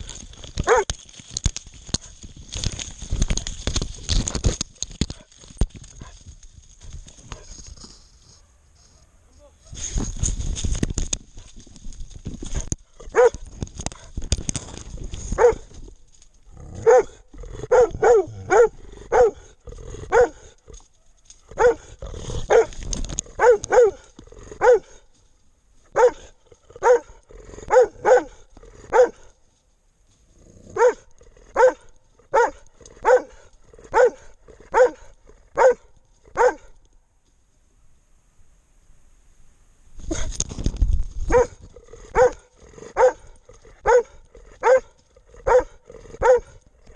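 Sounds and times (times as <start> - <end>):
dog barking: 0.6 - 0.9, 13.1 - 13.4, 15.4 - 15.6, 16.8 - 19.5, 20.1 - 21.9, 22.5 - 22.7, 23.4 - 24.0, 24.6 - 25.0, 26.0 - 29.3, 30.8 - 36.7, 41.3 - 46.6.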